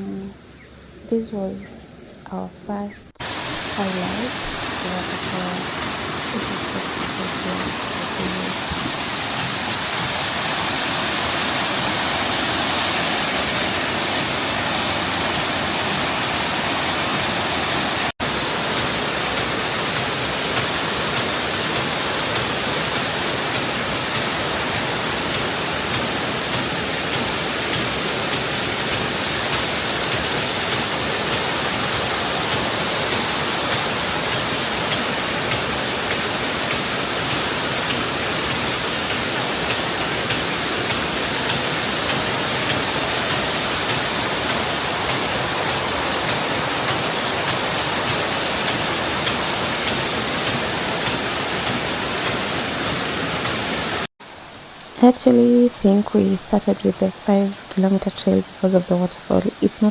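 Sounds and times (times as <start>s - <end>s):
waterfall rushing: 3.2s - 54.1s.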